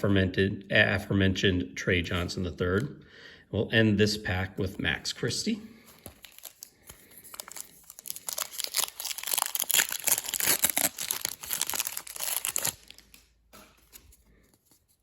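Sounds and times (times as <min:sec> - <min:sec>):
plastic wrapper crinkling and tearing: 0:05.9 - 0:14.0.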